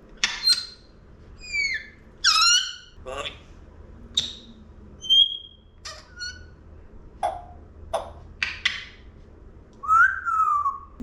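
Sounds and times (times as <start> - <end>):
parrot whistling: 1.4 - 3.0, 5.0 - 6.5, 9.8 - 11.0.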